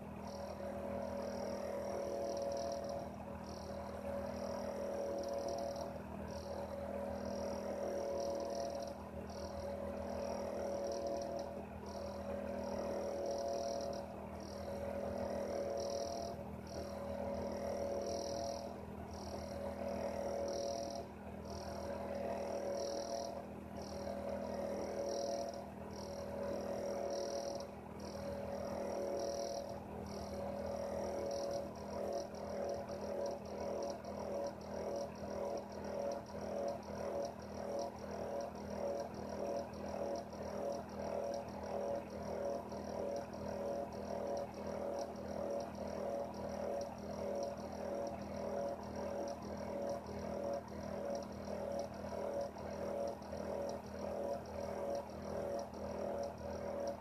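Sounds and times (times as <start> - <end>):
heater hum: 0.0 - 57.0.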